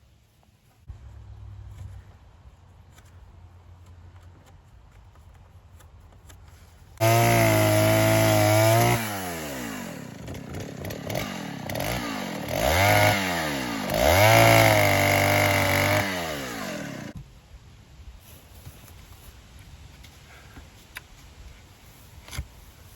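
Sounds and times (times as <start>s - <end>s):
chainsaw cutting wood: 7.0s - 17.2s.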